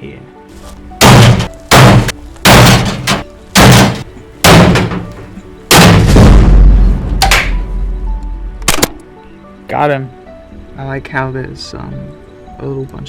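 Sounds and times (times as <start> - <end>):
hammer striking sheet metal: 1.0 - 5.1.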